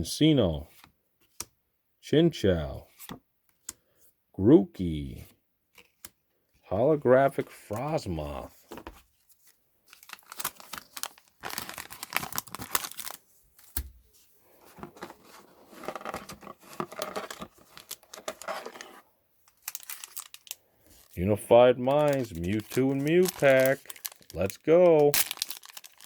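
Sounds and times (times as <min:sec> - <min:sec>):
foil wrapper crinkling and tearing: 0:09.4 - 0:13.8, 0:19.5 - 0:21.2, 0:21.8 - 0:26.0.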